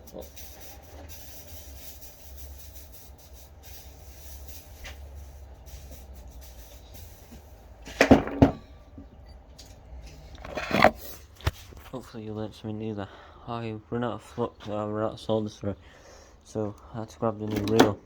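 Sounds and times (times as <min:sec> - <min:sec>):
sharp knocks: 0:08.0 - 0:08.7.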